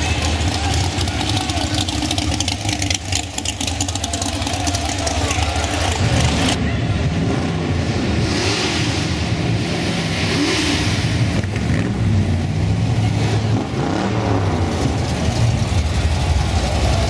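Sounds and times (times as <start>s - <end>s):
car engines revving: 0.0s - 17.0s.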